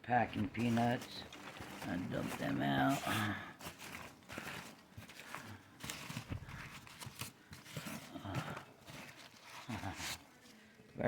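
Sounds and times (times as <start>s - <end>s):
packing material rustling: 0.0s - 10.8s.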